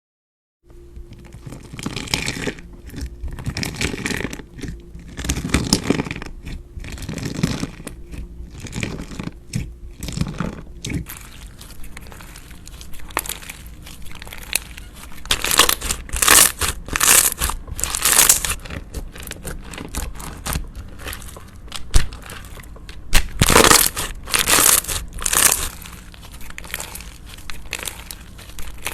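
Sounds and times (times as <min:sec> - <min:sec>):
slime crackling squishes: 0:01.2 - 0:28.9.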